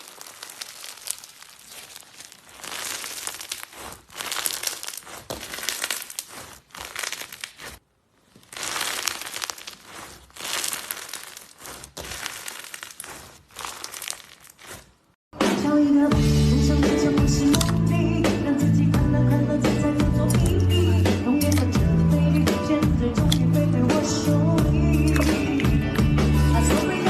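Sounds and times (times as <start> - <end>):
slime crackling: 0.0 - 15.2.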